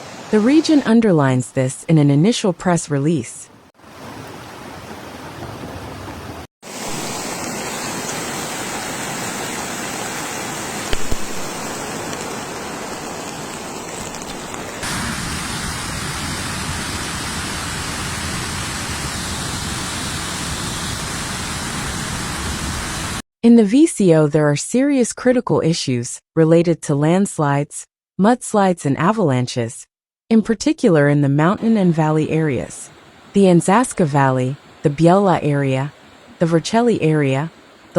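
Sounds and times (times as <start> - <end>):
rushing floodwater: 3.8 - 23.2.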